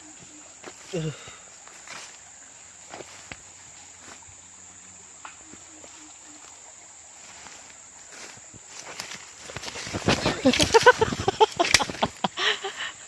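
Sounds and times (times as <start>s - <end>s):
insects high-pitched drone: 0.0s - 13.0s
faint clicks: 11.4s - 12.2s.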